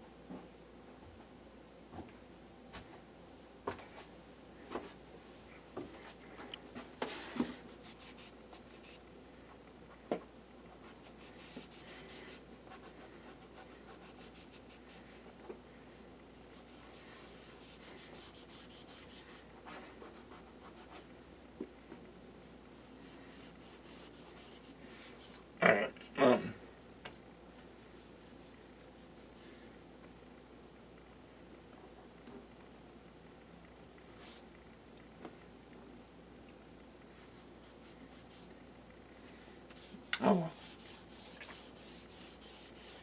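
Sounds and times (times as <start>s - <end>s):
scratchy rubbing: 17.2s - 19.4s, 39.8s - 43.0s.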